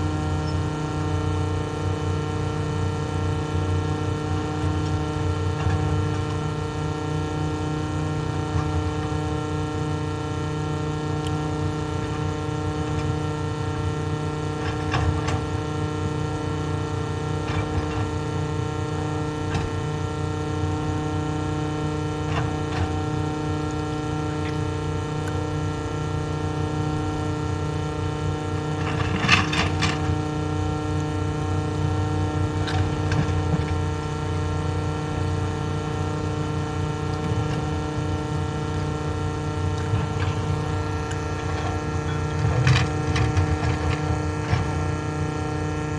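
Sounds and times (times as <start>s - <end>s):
excavator diesel engine running: 0.0s - 9.4s, 28.5s - 45.9s.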